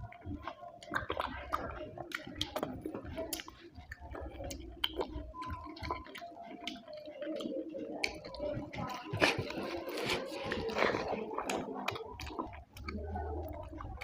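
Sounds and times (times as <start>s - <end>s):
person chewing food: 0.0s - 14.0s.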